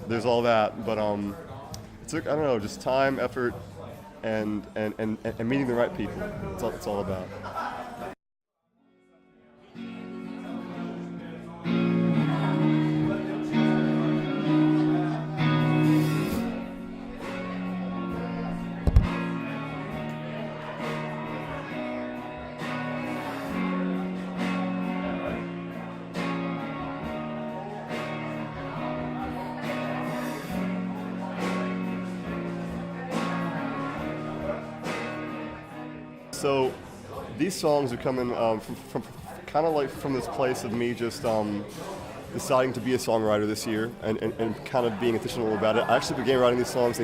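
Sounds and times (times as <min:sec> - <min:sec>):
guitar strumming: 0:09.0 - 0:36.5.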